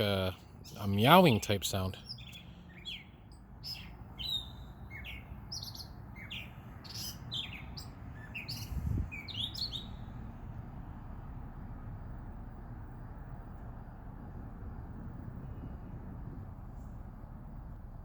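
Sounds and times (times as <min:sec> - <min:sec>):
birds chirping: 0:00.0 - 0:10.5
steady low rumble: 0:08.7 - 0:18.0.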